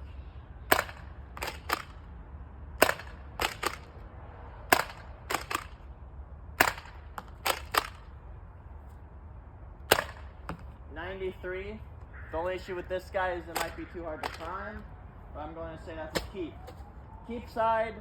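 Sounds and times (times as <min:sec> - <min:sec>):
priming action clicks: 0:00.7 - 0:02.0, 0:02.8 - 0:03.9, 0:04.7 - 0:05.8, 0:13.5 - 0:14.6
foam-dart blaster shot snap: 0:09.9 - 0:10.2, 0:13.6 - 0:14.5.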